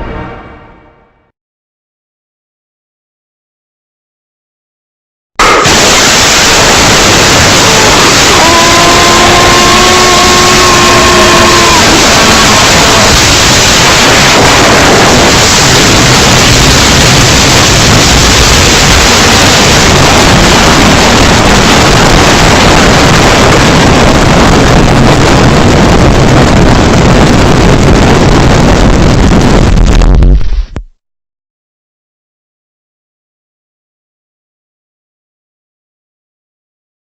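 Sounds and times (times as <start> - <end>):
loud harsh static hiss: 5.4 - 30.8.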